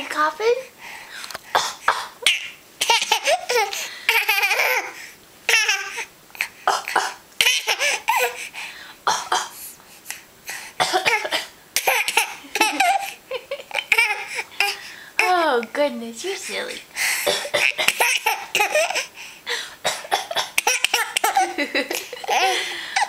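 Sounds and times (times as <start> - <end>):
baby fake coughing: 1.5 - 4.9, 5.5 - 8.4, 9.1 - 9.6, 10.8 - 15.3, 17.2 - 19.1, 19.8 - 23.0
baby laughing and giggling: 2.2 - 8.4, 11.8 - 14.8, 17.6 - 19.1, 20.6 - 23.0.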